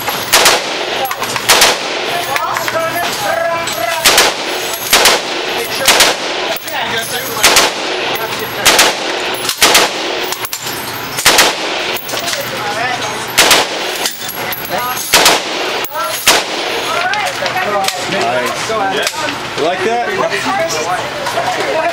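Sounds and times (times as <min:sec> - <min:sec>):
gunshots with echo: 0:00.0 - 0:02.2, 0:03.9 - 0:06.7, 0:07.4 - 0:10.6, 0:11.2 - 0:12.2, 0:13.4 - 0:14.2, 0:15.0 - 0:16.9.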